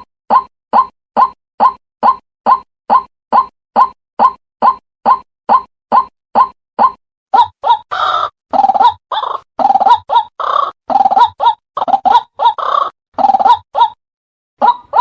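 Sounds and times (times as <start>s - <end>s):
waterhen croaking calls: 7.4s - 14.0s, 14.6s - 15.0s.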